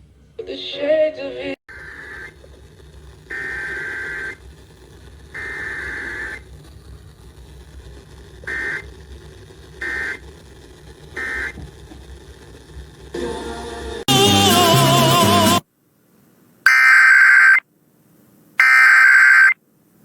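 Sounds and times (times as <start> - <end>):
low hum and hiss: 0.0 - 14.0, 15.6 - 16.8, 17.6 - 18.7, 19.6 - 20.0
high electronic beeps: 18.6 - 19.6.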